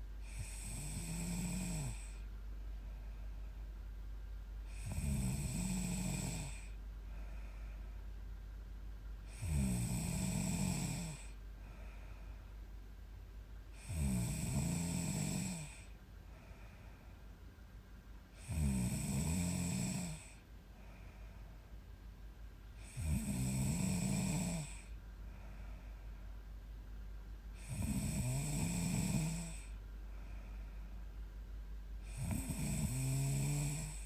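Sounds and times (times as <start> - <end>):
quiet breathing: 0.0 - 34.0
woman snoring: 0.2 - 2.2, 4.7 - 6.8, 9.3 - 11.9, 13.7 - 16.0, 18.4 - 20.4, 22.8 - 25.0, 27.6 - 29.8, 32.0 - 34.0.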